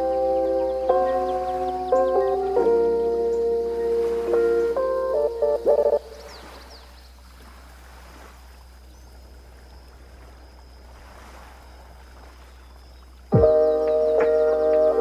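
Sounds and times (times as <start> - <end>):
faint high bird chirps: 0.0 - 7.2, 12.4 - 15.0
ocean waves on a beach: 0.0 - 15.0.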